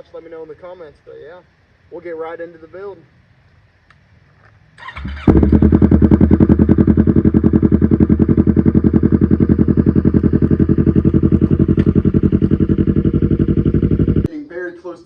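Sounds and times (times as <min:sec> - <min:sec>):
motorcycle engine starting and idling: 0:04.8 - 0:14.3.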